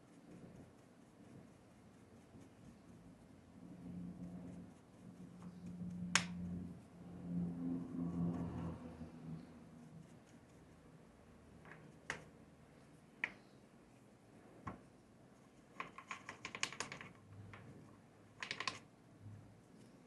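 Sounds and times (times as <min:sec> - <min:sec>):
small hard objects clicking: 0:15.8 - 0:17.2, 0:18.4 - 0:18.8.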